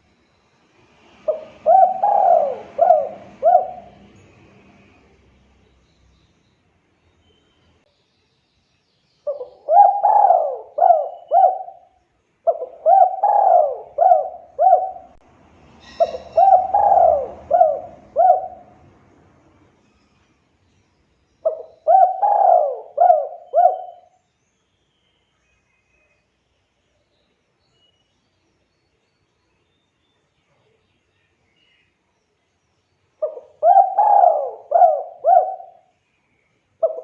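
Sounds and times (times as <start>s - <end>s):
dove cooing: 1.2s - 5.0s, 9.3s - 15.2s, 15.8s - 19.0s, 21.4s - 24.1s, 33.2s - 35.9s.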